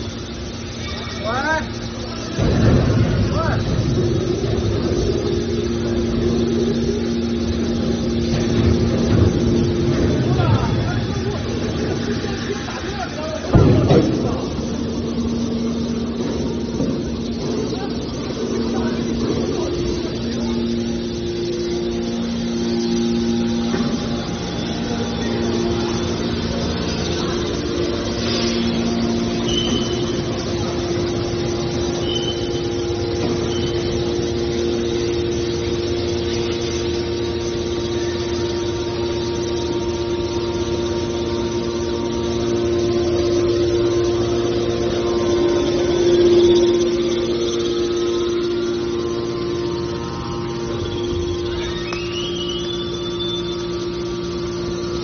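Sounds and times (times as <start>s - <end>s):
hydraulic press mechanical hum: 0.0s - 55.0s
short high squeaks: 28.2s - 30.2s, 45.6s - 53.8s.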